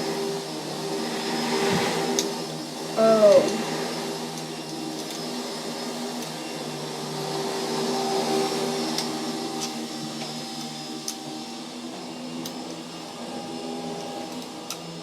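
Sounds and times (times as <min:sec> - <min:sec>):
vacuum cleaner running: 0:00.0 - 0:15.0
light clicks of small parts: 0:02.1 - 0:02.4, 0:04.4 - 0:05.2, 0:08.9 - 0:11.2, 0:12.4 - 0:12.8, 0:14.0 - 0:14.9.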